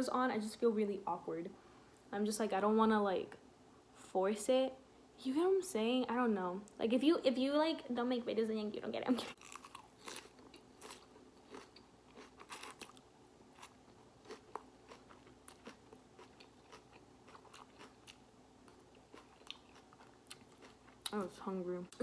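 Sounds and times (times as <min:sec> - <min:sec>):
faint steady hum: 0:00.0 - 0:22.0
lettuce crunching between teeth: 0:09.4 - 0:21.2.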